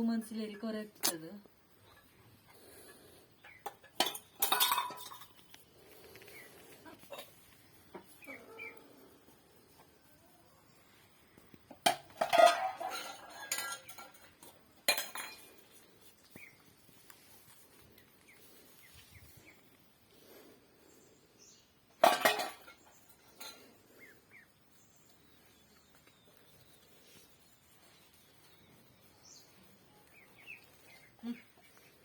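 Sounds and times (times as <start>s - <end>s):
hard objects clinking and clattering: 3.6s - 5.6s, 11.8s - 15.8s, 22.0s - 23.8s.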